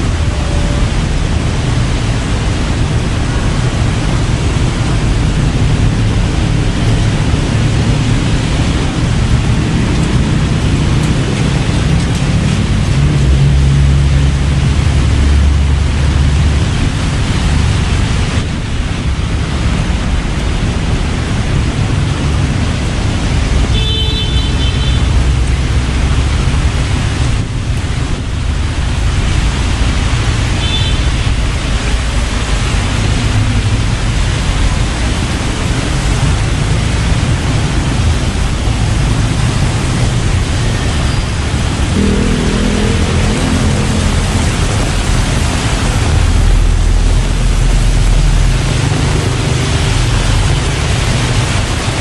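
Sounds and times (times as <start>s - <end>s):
heavy rain hiss: 0.0s - 52.0s
deep rumble: 31.3s - 52.0s
brief high tones: 42.0s - 44.3s.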